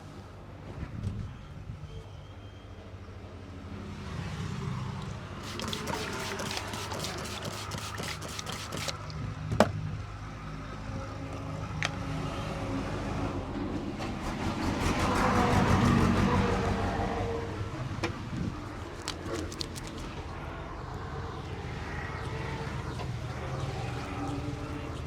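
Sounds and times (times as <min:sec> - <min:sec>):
road traffic hum: 0:03.6 - 0:25.0.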